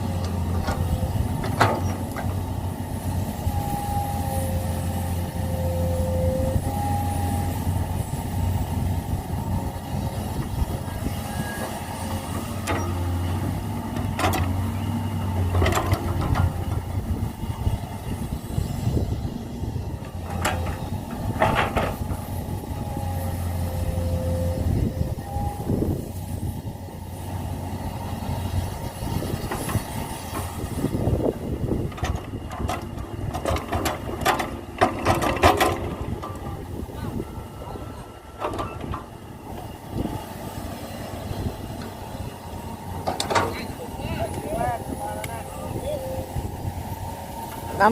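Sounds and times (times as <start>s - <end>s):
diesel machinery running: 0.0s - 47.9s
metallic clanks and knocks: 31.9s - 36.4s, 43.0s - 43.6s.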